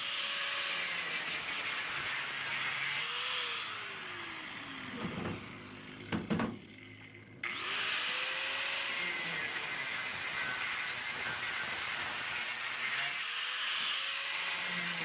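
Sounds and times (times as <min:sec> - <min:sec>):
power tool motor whining: 0:00.0 - 0:15.0
knocks of tool stopping: 0:06.1 - 0:07.1.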